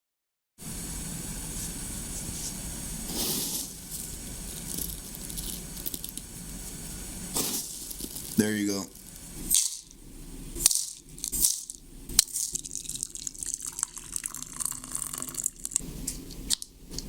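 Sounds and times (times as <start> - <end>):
granola clusters rattling: 10.6 - 12.9.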